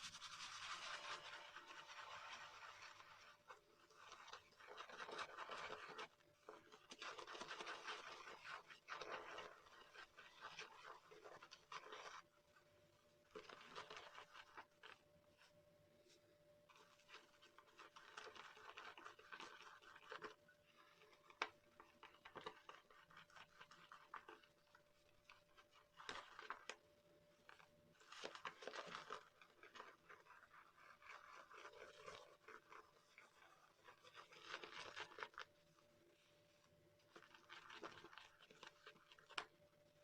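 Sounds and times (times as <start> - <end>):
shaving brush swishing in bowl: 0.0 - 6.1.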